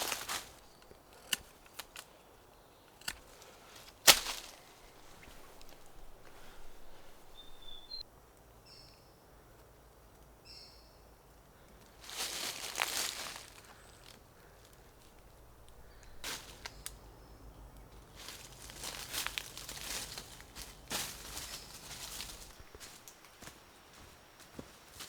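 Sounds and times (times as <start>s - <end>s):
twigs snapping: 0.0s - 8.5s, 11.4s - 17.1s, 17.7s - 23.5s
dry leaves and twigs rustling: 0.0s - 8.8s, 11.2s - 25.0s.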